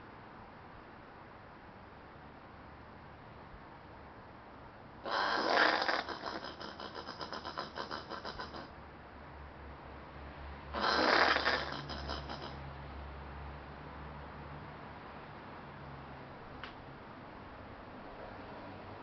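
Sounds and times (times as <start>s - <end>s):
possum rasping calls: 5.0s - 8.7s, 10.7s - 12.6s.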